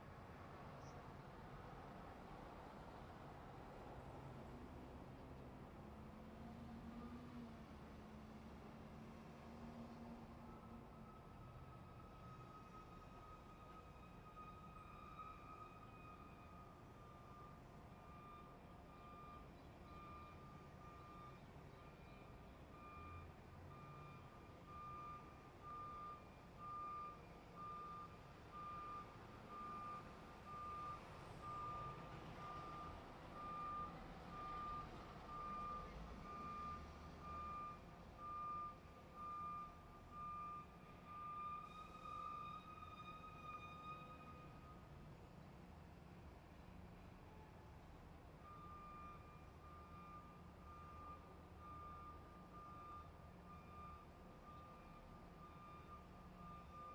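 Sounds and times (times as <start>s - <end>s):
truck reversing alarm beeping: 10.3s - 44.8s, 48.3s - 56.9s.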